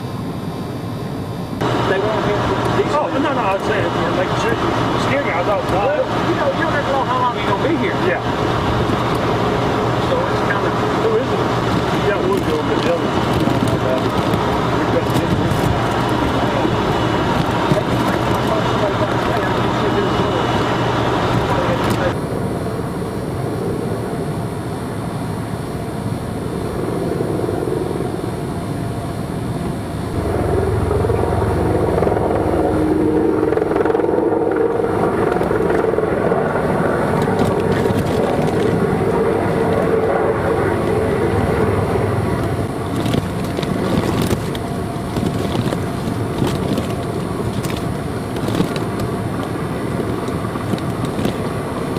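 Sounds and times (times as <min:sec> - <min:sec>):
engine running with low rumble: 0:00.0 - 0:51.9
light clicks and crackles: 0:42.4 - 0:49.6.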